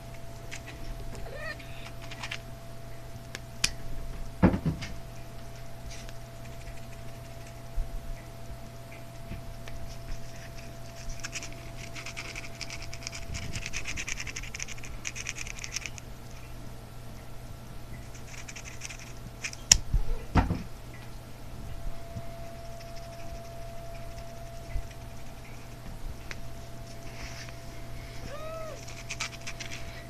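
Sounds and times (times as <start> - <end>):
cat claws scratching: 0.0 - 2.5, 6.3 - 7.7, 9.6 - 16.1, 18.0 - 19.8, 22.3 - 25.9, 28.3 - 30.0
low electrical hum: 0.0 - 30.0.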